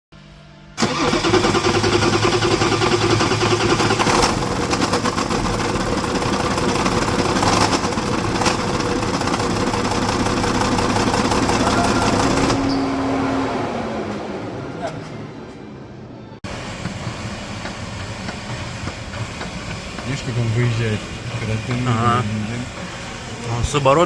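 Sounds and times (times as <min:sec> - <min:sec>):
diesel engine running: 0:00.7 - 0:24.0
rapid metallic engine knock: 0:04.0 - 0:12.5.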